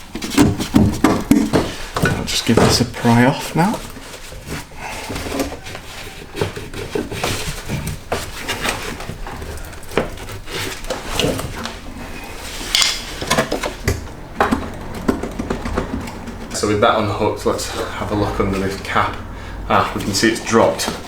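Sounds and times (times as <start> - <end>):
metallic clatter: 10.2 - 18.9.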